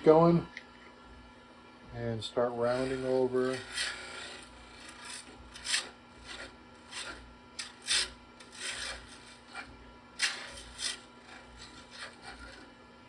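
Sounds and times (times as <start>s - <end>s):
lathe hum: 2.3s - 13.0s
cutter scraping wood: 2.5s - 12.8s.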